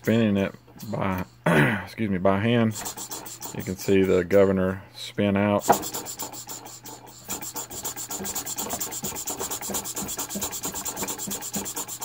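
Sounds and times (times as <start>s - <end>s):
steam engine chugging: 2.7s - 4.3s, 5.6s - 12.0s.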